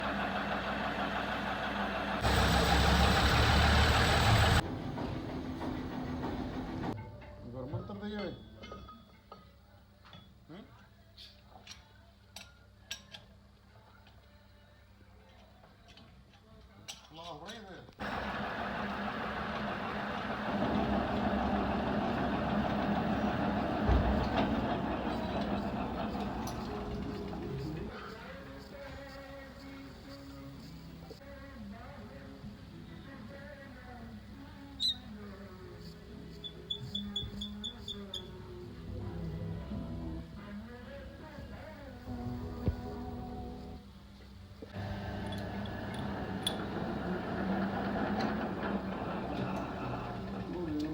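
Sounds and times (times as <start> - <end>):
lathe running with mechanical hum: 0.0 - 4.6, 18.0 - 27.9, 44.8 - 50.9.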